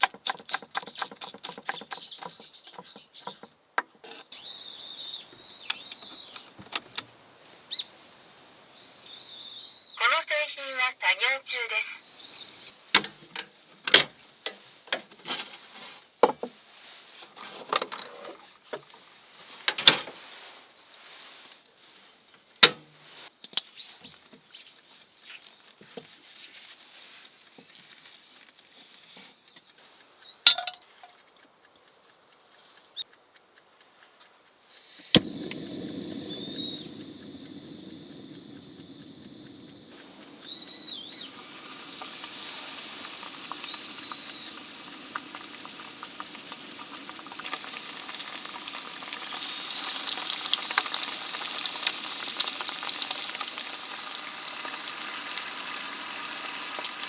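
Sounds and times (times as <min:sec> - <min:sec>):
utensils and containers clicking: 0:00.0 - 0:03.4
steady low rushing noise: 0:35.2 - 0:41.8.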